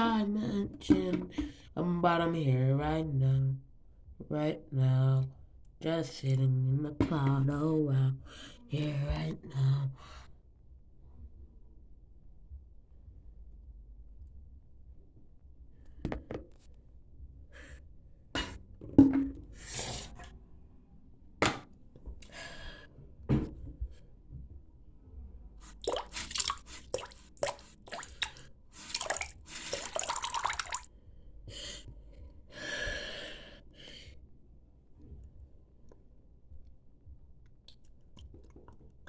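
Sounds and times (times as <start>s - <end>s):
hissing water splashes: 25.7s - 30.8s
water dripping and plopping: 25.7s - 30.9s.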